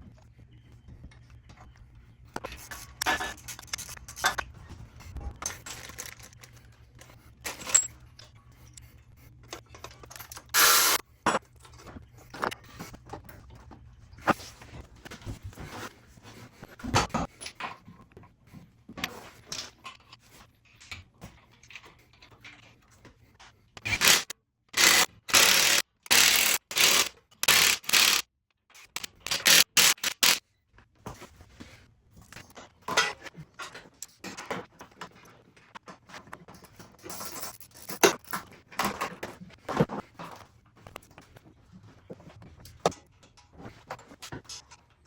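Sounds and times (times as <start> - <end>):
hand tools scraping and clinking: 5.4 - 12.7, 32.2 - 45.0.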